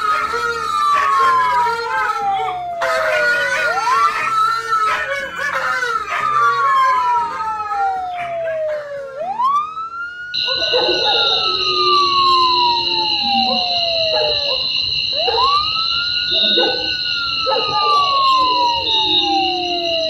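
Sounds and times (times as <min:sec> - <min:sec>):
dogs howling: 0:00.0 - 0:09.5, 0:10.4 - 0:20.0
emergency vehicle siren wailing: 0:00.0 - 0:20.0
steady high ringing tone: 0:10.3 - 0:20.0.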